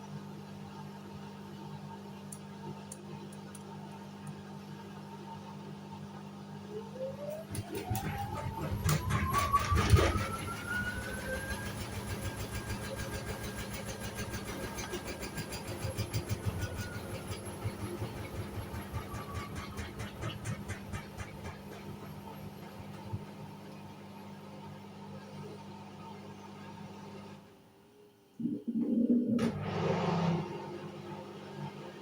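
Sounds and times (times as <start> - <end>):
washing machine humming: 6.6 - 25.7, 28.4 - 32.0
rhythmic clatter: 11.5 - 22.1
low hum: 28.3 - 30.8.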